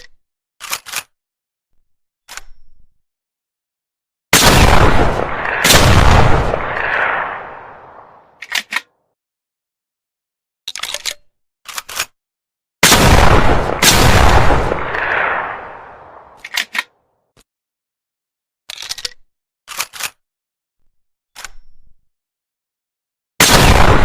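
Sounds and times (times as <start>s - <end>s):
shotgun shots: 4.4s - 8.3s, 12.8s - 16.5s, 23.4s - 24.0s.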